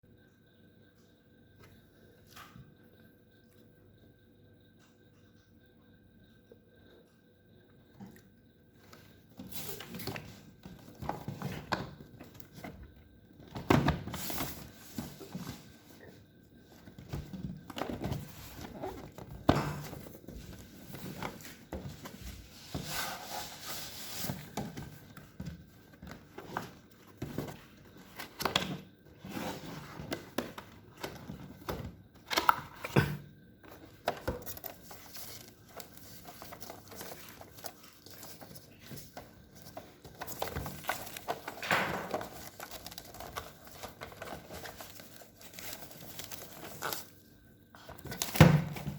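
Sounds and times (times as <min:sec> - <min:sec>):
plastic or paper crinkling: 0:33.7 - 0:47.2
cardboard thunks: 0:40.2 - 0:42.6, 0:48.0 - 0:48.9.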